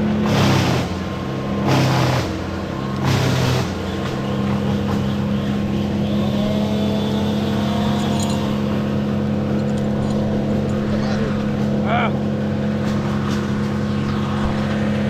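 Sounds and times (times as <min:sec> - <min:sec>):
loud burst of noise: 0:00.0 - 0:09.4, 0:10.4 - 0:15.0
engine running steadily: 0:00.0 - 0:15.0.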